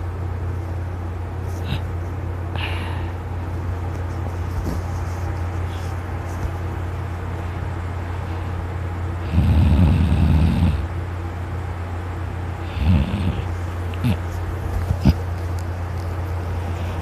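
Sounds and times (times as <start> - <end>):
steady low hum: 0.0 - 17.0
man snoring loudly: 9.2 - 10.9, 12.6 - 14.2.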